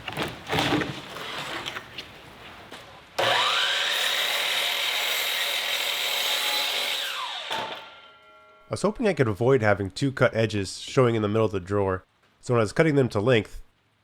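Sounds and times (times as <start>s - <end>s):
wooden knocks and handling: 0.0s - 2.8s
electric power saw cutting boards: 3.2s - 8.2s.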